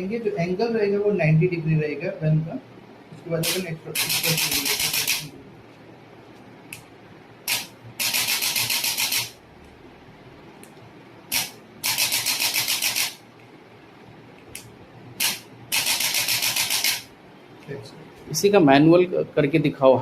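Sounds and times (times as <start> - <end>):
adjusting gun rapid clicking: 3.4 - 5.3, 7.5 - 9.4, 11.3 - 13.2, 14.5 - 17.1.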